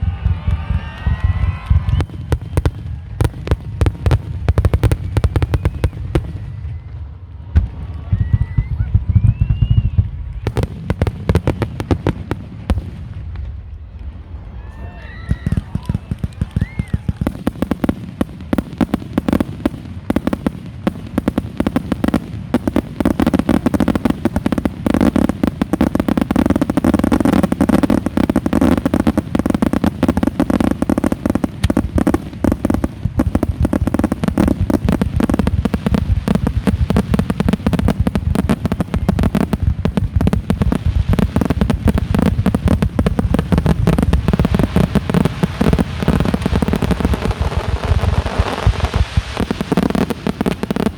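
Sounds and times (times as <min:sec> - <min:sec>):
firework whistle: 0:00.0 - 0:03.9, 0:04.5 - 0:11.5, 0:13.8 - 0:17.9
fireworks bursting and crackling: 0:00.0 - 0:50.9.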